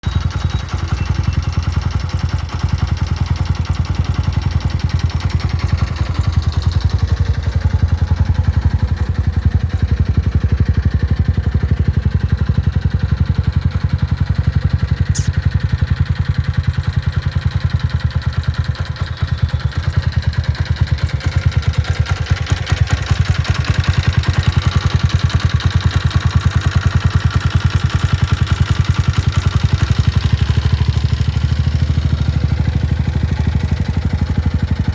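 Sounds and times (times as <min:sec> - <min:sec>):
abnormal mechanical engine noise: 0:00.0 - 0:16.2
motorcycle engine idling: 0:00.0 - 0:34.9.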